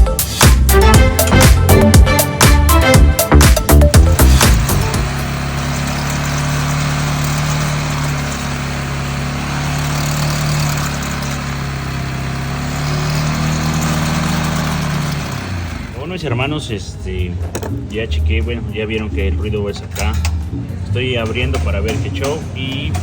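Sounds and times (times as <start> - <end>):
music: 0.0 - 5.4, 16.0 - 23.0
atv engine running: 0.0 - 16.4.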